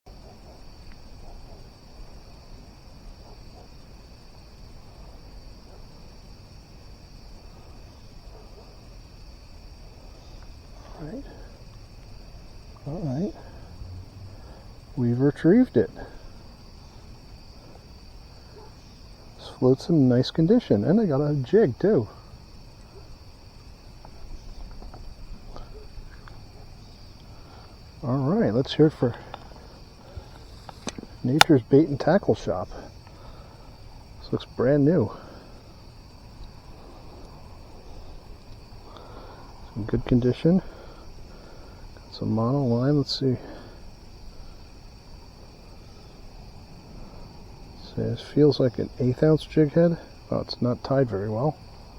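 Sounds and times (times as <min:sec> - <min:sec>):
insect chorus buzzing: 0:00.1 - 0:51.9
faint small ticks: 0:10.0 - 0:14.7, 0:27.2 - 0:27.8, 0:29.2 - 0:31.6, 0:37.2 - 0:39.5
low rumble: 0:13.3 - 0:15.2.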